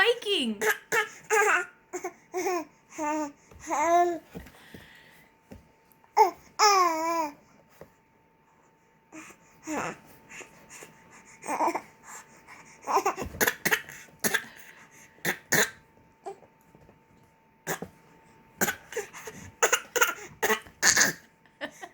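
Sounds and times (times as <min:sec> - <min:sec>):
baby fake-coughing: 0:12.9 - 0:15.9, 0:17.6 - 0:17.9, 0:18.6 - 0:21.3.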